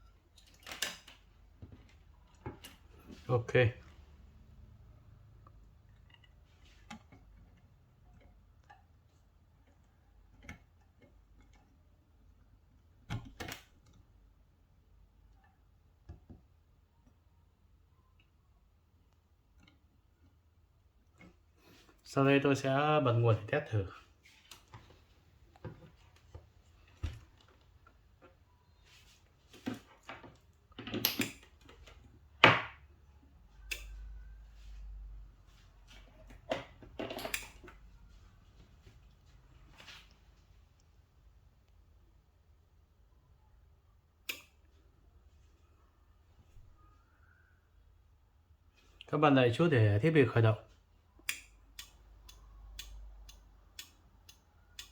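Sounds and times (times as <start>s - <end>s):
low electrical hum: 0.0s - 54.9s
clicks and knocks of handling equipment: 0.3s - 3.3s, 24.2s - 32.8s, 35.5s - 37.8s.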